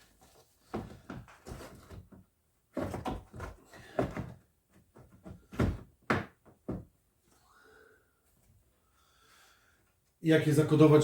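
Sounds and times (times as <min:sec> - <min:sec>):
knocks and clattering thuds: 0:00.7 - 0:07.0.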